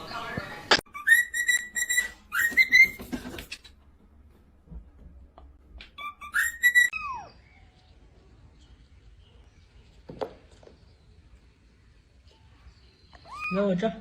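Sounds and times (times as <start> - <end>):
high whistled notes: 6.0 - 7.1.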